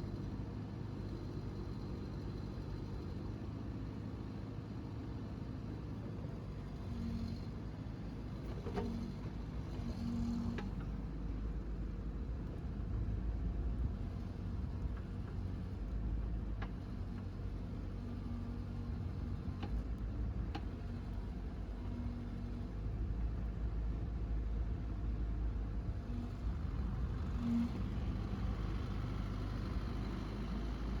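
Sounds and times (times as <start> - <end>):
diesel engine rumbling: 26.0 - 31.0.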